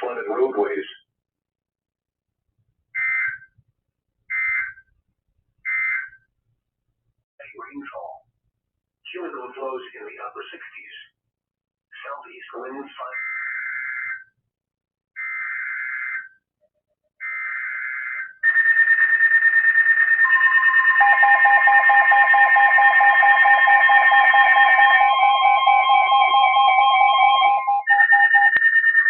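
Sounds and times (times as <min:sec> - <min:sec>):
pulsing layered alert tones: 0:20.2 - 0:29.0.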